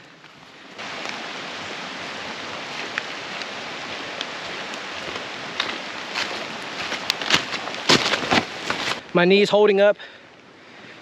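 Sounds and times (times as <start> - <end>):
rain hissing: 0.0 - 11.0.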